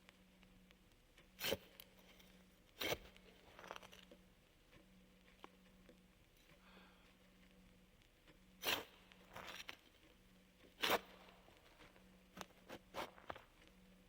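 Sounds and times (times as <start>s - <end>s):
faint steady hum: 0.0s - 14.0s
sharp rasping noises: 8.6s - 9.8s, 10.8s - 11.8s.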